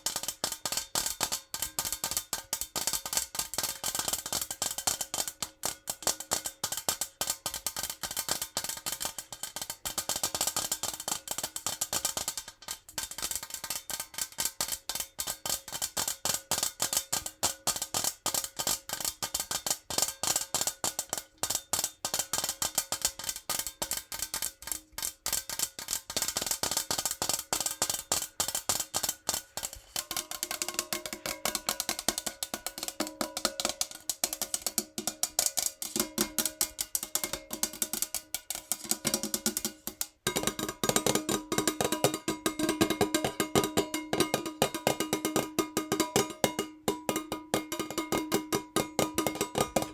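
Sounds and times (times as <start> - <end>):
fingernails tapping on metal jar: 22.6 - 49.9.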